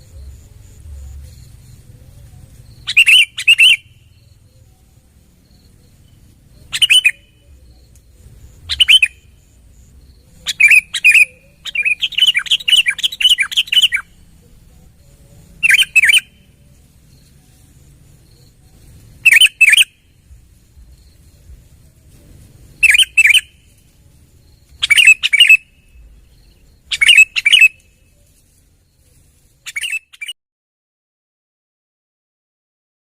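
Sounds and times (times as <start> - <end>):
bird chirping loudly: 2.7 - 4.3, 6.5 - 7.6, 8.5 - 9.5, 10.4 - 14.2, 15.6 - 16.6, 19.2 - 20.1, 22.8 - 23.7, 24.8 - 28.0, 29.7 - 30.4.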